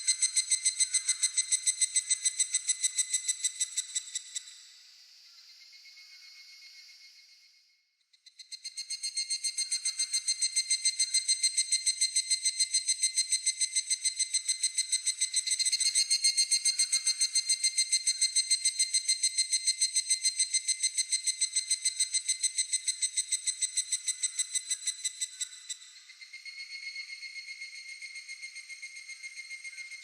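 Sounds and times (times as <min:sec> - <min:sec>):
cicada trilling: 0:08.5 - 0:30.0.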